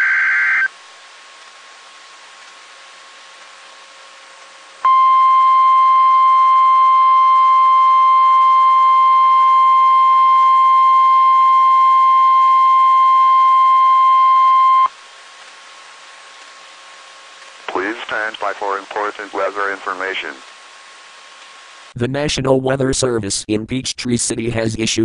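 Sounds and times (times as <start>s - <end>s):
loud steady alarm tone: 4.9s - 14.9s
faint hiss: 14.9s - 22.0s.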